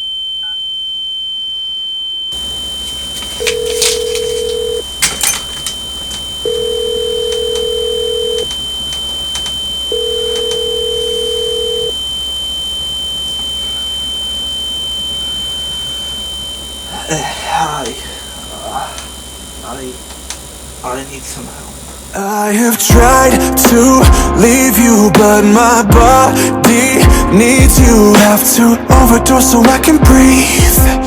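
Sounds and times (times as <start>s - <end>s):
high-pitched whine: 1.6s - 31.0s
low hum: 2.1s - 30.4s
telephone ringback tone: 2.3s - 20.5s
sharp clicks: 3.2s - 9.6s, 10.2s - 10.8s, 20.0s - 20.5s.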